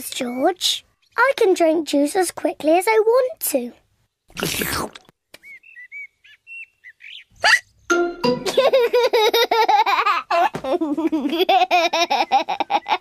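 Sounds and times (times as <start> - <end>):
cartoon slurping gulp: 4.3 - 5.1
small bird chirps: 5.3 - 7.9
laughter: 8.4 - 13.0.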